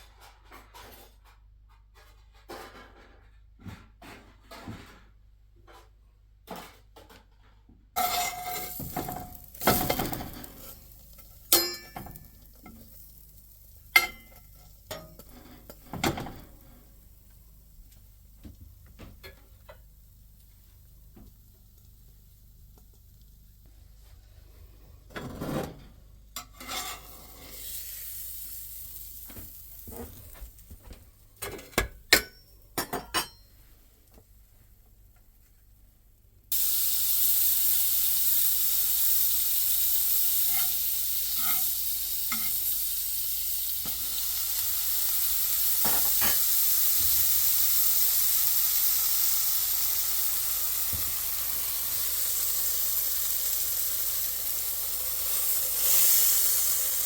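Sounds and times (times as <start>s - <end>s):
utensils clicking on cookware: 8.0s - 16.6s, 40.2s - 42.7s
sandwich sizzling in a hot pan: 8.0s - 23.7s, 26.4s - 30.8s, 36.5s - 57.0s.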